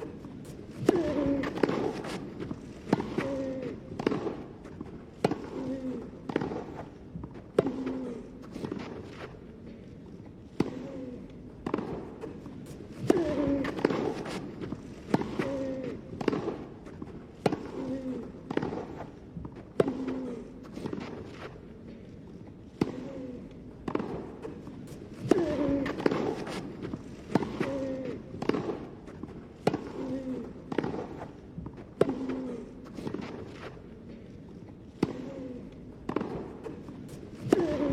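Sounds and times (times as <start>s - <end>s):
racket striking tennis ball: 0.0s - 9.4s, 11.6s - 21.6s, 23.8s - 33.8s, 35.0s - 35.3s, 36.0s - 37.9s
players grunting and shouting: 0.8s - 4.2s, 5.2s - 6.4s, 12.9s - 16.4s, 17.4s - 18.9s, 22.8s - 23.5s, 25.2s - 26.6s, 27.3s - 28.6s, 29.7s - 30.8s, 32.0s - 32.8s, 37.4s - 37.9s.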